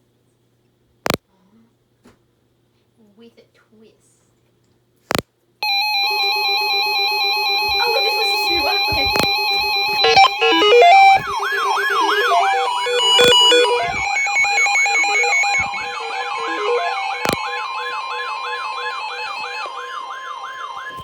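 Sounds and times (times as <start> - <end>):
beeping tone melodies: 5.6 - 21.0
electronic siren falling sweep: 5.6 - 21.0
steady high alert tone: 5.6 - 21.0
sharp clicks: 7.6 - 19.7.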